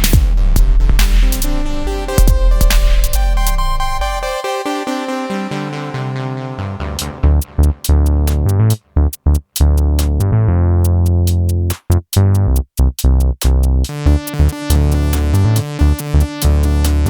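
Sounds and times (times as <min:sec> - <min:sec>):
electronic music: 0:00.0 - 0:08.8, 0:13.9 - 0:17.0
heavy synth bass: 0:00.0 - 0:12.7, 0:13.5 - 0:17.0
falling synth sweep: 0:01.5 - 0:07.9.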